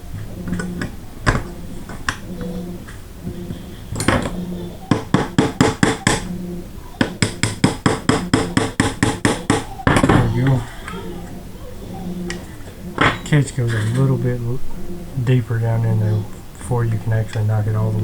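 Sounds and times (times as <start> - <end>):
hammer tapping steel punch: 3.3 - 6.4, 7.0 - 10.6, 13.0 - 14.2.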